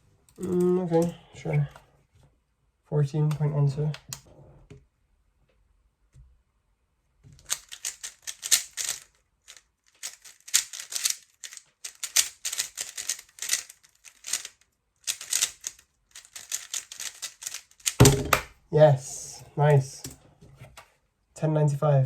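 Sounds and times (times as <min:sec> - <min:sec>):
puzzle cube clacking: 0:07.4 - 0:19.3.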